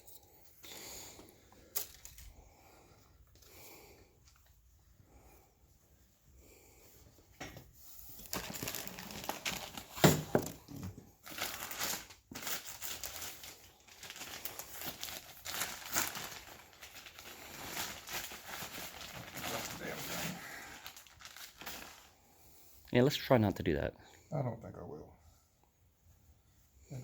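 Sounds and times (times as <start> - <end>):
packaging crinkling: 8.2 - 10.3, 11.2 - 22.2.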